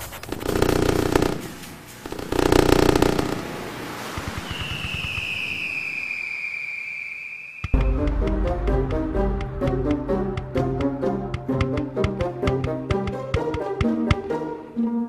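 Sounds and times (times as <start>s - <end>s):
fireworks crackling bursts: 0.0s - 7.8s
firework whistle falling in pitch: 4.3s - 8.0s.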